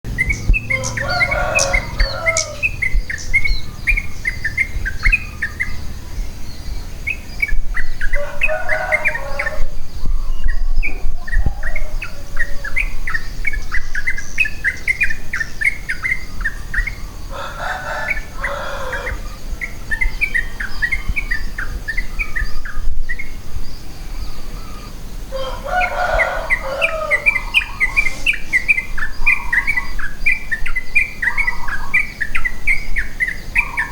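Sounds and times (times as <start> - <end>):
quick high bird chirps: 0.1 - 8.1, 26.5 - 32.6
lower fuller bird call: 0.1 - 33.9.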